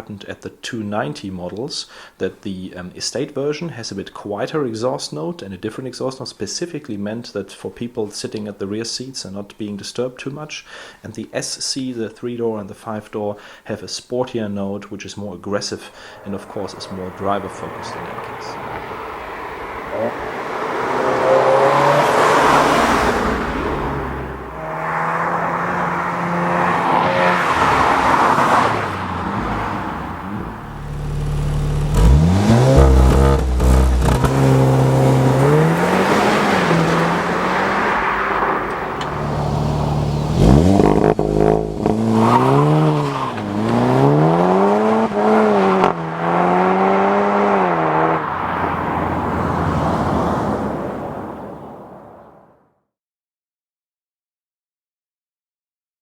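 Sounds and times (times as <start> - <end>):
car engine revving: 15.9 - 51.1.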